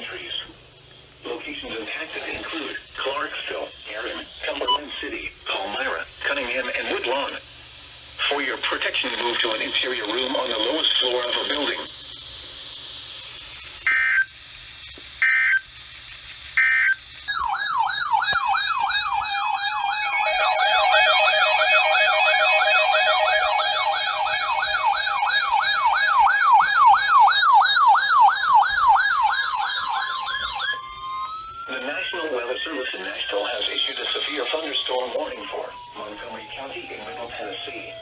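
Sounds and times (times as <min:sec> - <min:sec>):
data tone bursts: 0:04.5 - 0:05.0, 0:18.6 - 0:27.2
electronic siren yelping: 0:13.8 - 0:14.3, 0:15.2 - 0:15.7, 0:16.6 - 0:38.0
second siren tone: 0:16.6 - 0:33.7, 0:34.4 - 0:38.0.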